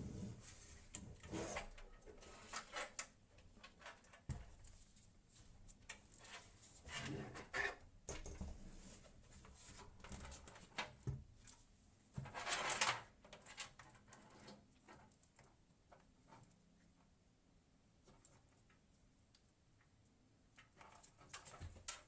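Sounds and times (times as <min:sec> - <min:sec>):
rustling scrape: 0:00.0 - 0:02.6.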